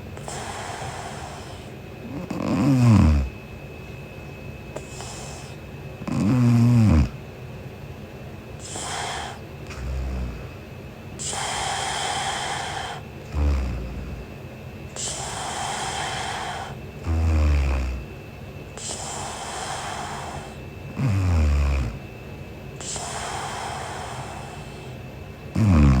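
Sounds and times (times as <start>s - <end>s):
woman snoring: 0.2s - 3.4s, 4.8s - 7.2s, 8.6s - 10.6s, 11.2s - 14.3s, 15.0s - 18.1s, 18.8s - 22.1s, 22.8s - 26.0s.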